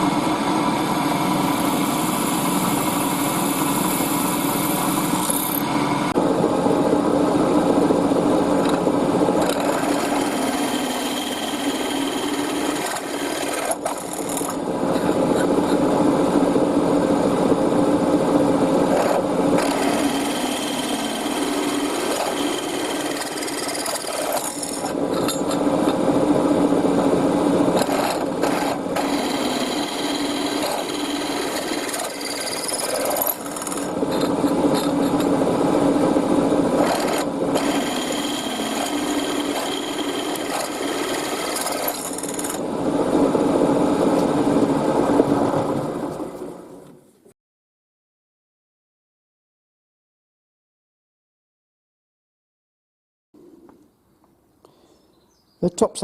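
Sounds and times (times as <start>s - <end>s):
power tool on metal: 0.0s - 6.1s, 9.4s - 14.6s, 18.9s - 26.0s, 27.7s - 35.3s, 36.8s - 42.7s.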